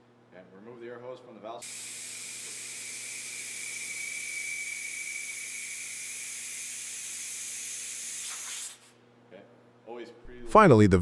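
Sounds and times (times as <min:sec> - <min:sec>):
compressed air hissing through valve: 0:01.6 - 0:09.0
faint whistle: 0:03.1 - 0:06.5.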